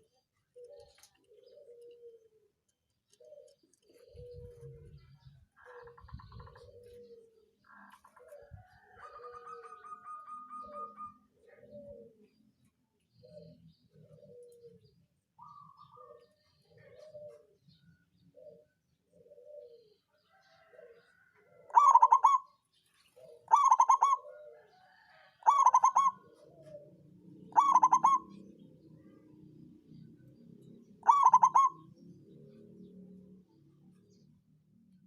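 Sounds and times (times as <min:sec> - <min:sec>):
dove cooing: 0:00.0 - 0:29.3, 0:31.0 - 0:32.6
soft low coos: 0:03.2 - 0:09.9.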